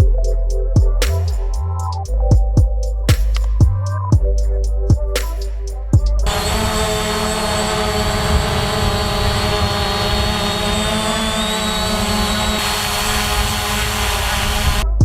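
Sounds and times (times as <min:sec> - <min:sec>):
wind buffeting microphone: 0:06.2 - 0:12.6
drone motors whining: 0:06.2 - 0:14.8.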